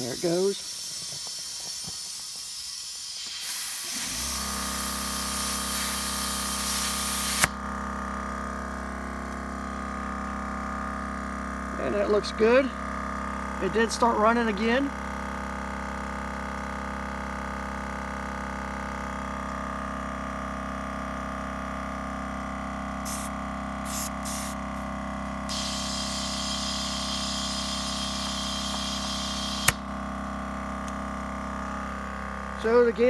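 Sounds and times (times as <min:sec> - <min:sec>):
air hissing: 0:00.0 - 0:07.6, 0:23.0 - 0:29.9
air compressor motor hum: 0:00.0 - 0:33.0
sharp click: 0:29.6 - 0:29.8.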